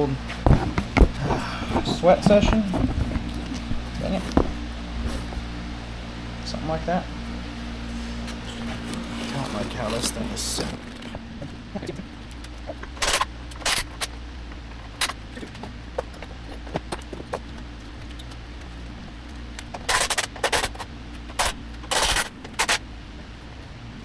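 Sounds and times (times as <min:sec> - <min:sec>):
metal tools clanking: 0:00.0 - 0:14.2
low hum: 0:00.0 - 0:24.0.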